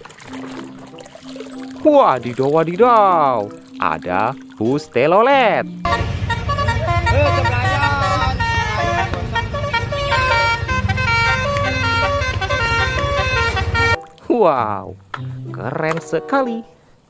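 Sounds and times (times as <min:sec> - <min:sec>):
low engine rumble: 0:05.5 - 0:14.0
multi-tone musical bus horn: 0:05.8 - 0:14.0.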